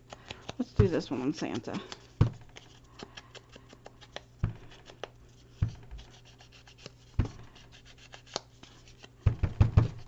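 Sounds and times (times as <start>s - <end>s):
dull thumps: 5.6s - 6.0s, 9.2s - 10.0s.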